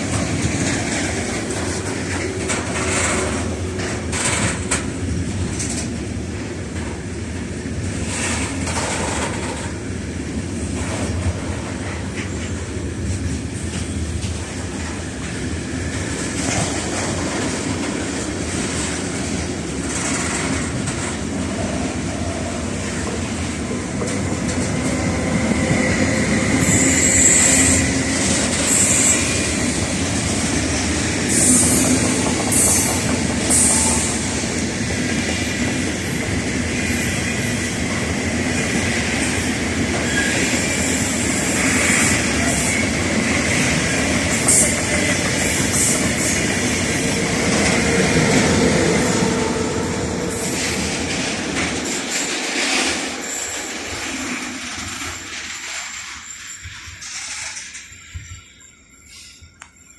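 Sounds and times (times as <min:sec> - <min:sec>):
clickety-clack over rail joints: 0:00.0 - 0:58.5
train wheels rumbling: 0:00.0 - 0:59.8
high-pitched wheel squeal: 0:24.8 - 0:29.8, 0:54.8 - 0:59.9.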